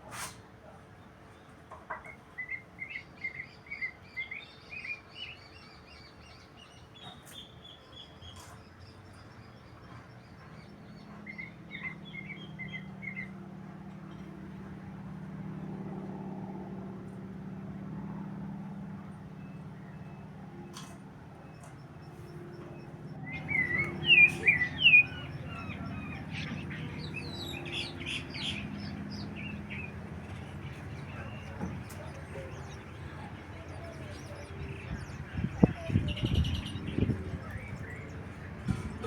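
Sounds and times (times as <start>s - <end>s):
bird chirping: 21.4s - 39.0s.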